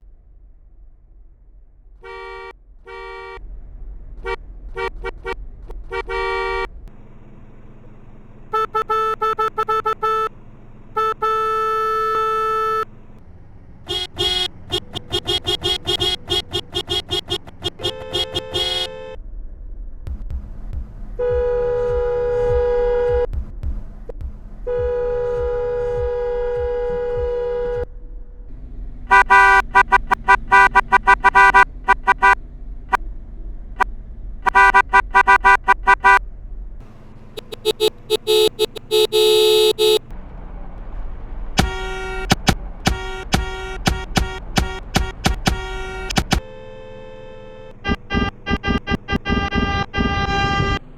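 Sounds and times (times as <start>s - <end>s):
car horns honking: 2.0s - 3.4s, 4.2s - 6.8s, 8.4s - 13.0s, 13.8s - 19.2s, 29.1s - 33.0s, 34.4s - 36.2s, 36.8s - 40.2s, 41.6s - 50.9s.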